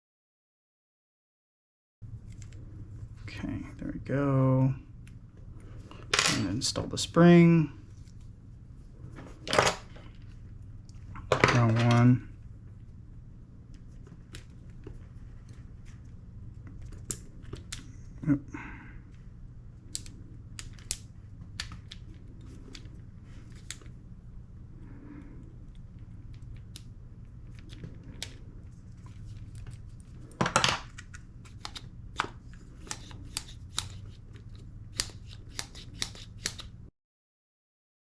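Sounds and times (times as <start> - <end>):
steady low hum: 2.0 - 36.9
small clicks and taps of parts: 19.9 - 21.0.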